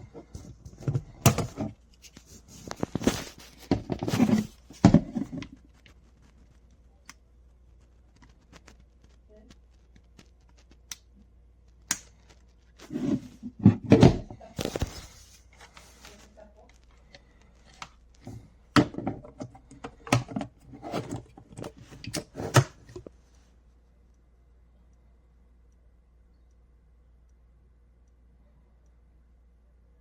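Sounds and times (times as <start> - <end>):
handling clicks and knocks: 18.2 - 23.1.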